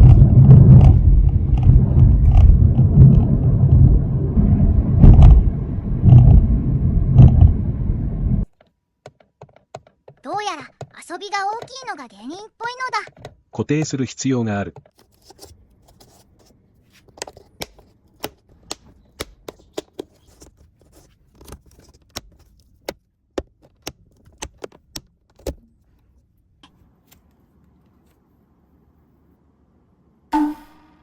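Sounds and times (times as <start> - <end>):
small hard parts clicking: 8.5 - 11.9.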